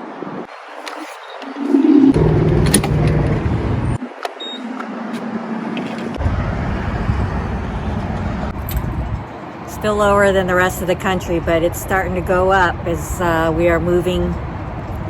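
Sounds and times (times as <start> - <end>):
steady hum: 1.4 - 4.0
vehicle engine rumble: 1.4 - 13.6.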